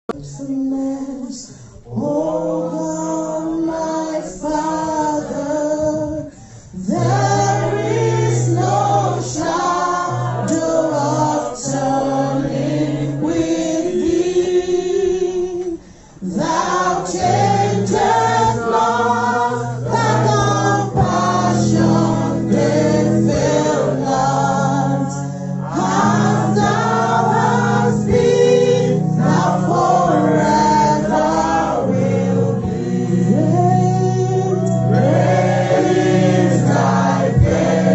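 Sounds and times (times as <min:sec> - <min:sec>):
choir singing gospel song: 0:01.9 - 0:37.9
sustained bass notes: 0:16.3 - 0:37.9.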